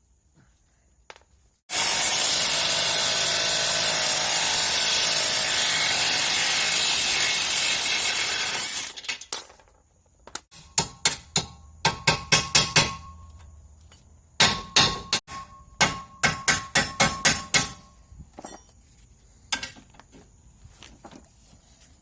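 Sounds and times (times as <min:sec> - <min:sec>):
sharp metallic knocks: 0:10.5 - 0:13.3, 0:14.4 - 0:17.8.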